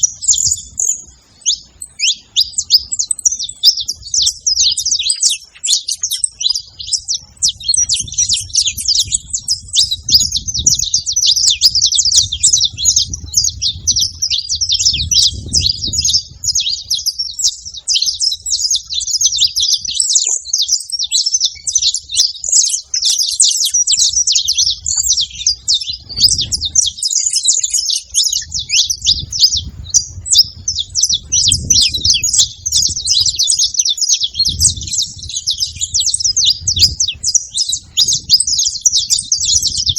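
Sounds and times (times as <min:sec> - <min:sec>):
finches chirping: 0:00.0 - 0:39.9.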